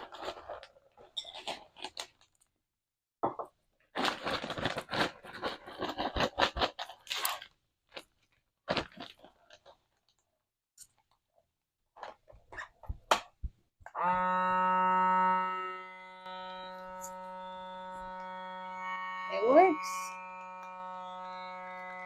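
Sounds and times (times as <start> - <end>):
plastic bag crinkling: 0.0 - 2.5, 3.9 - 10.3.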